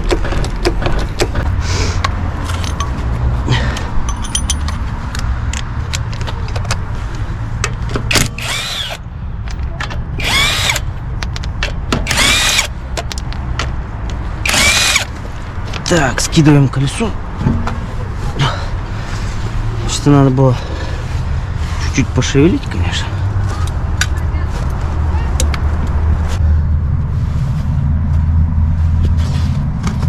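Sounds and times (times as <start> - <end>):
cordless power tool spinning: 8.4 - 9.0, 10.2 - 10.8, 12.1 - 12.7, 14.5 - 15.1.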